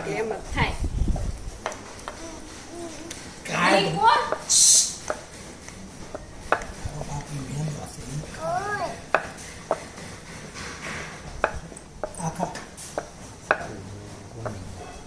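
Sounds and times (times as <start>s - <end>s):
murmuring voices: 13.7s - 15.0s.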